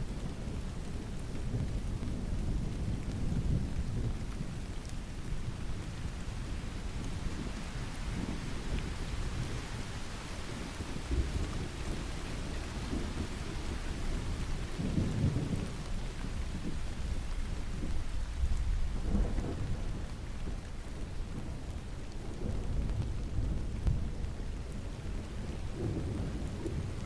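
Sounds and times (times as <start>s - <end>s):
steady rain falling: 0.0s - 27.0s
distant thunder rolling: 10.4s - 27.0s.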